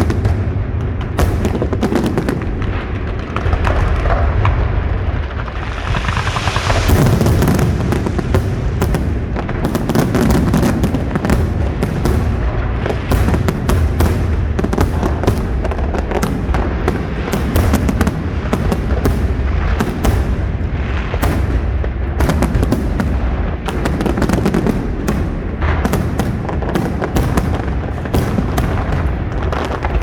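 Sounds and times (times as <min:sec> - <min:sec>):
low rumble: 0:00.0 - 0:23.9
fireworks bangs and crackling: 0:00.0 - 0:30.0.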